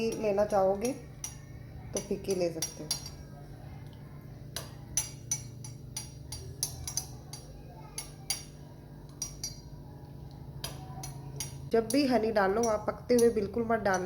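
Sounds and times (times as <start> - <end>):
spoon clinking against cup: 0.0 - 3.4, 4.6 - 9.8
low steady hum: 0.0 - 14.0.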